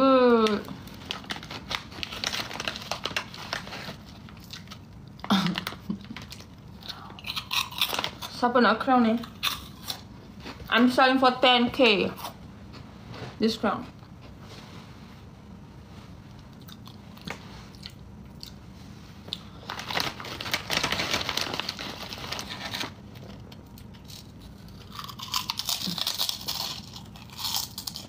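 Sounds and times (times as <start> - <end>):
snack and packaging crunching: 0.9 - 8.4, 9.2 - 10.1, 19.3 - 28.0.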